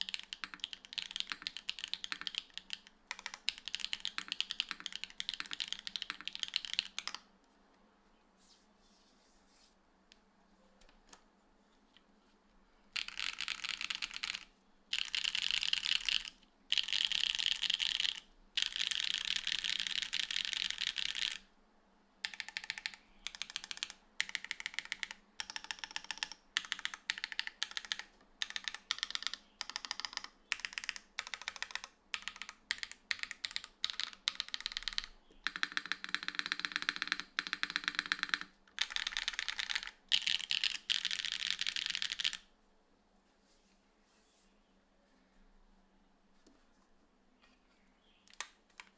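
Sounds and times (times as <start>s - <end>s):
mechanical keyboard typing: 0.0s - 7.2s, 13.0s - 21.4s, 22.2s - 42.5s.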